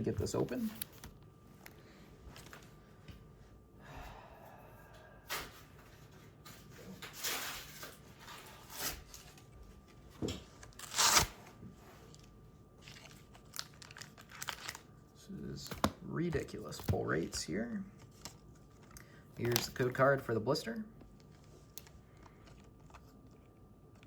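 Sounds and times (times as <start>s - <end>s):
card packaging crinkling: 0.0s - 1.8s, 10.5s - 11.4s, 12.1s - 20.4s.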